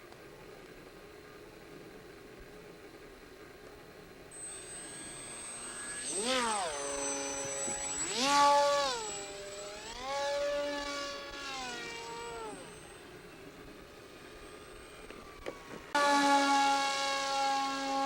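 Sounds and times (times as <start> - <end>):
model plane motor whining: 4.4 - 18.0.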